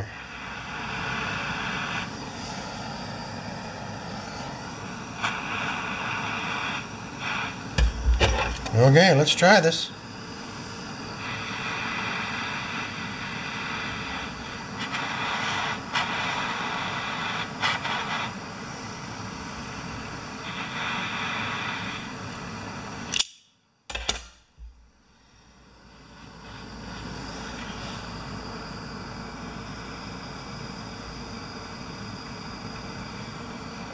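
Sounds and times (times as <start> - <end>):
steady hiss: 0.0 - 23.2, 24.0 - 33.9
sharp clicks: 23.1 - 24.8.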